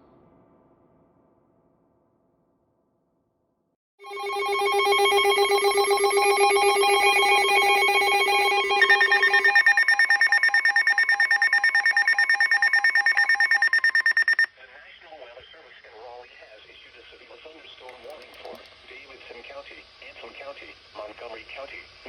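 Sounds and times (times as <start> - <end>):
pulsing electronic alarm: 4.0 - 14.5.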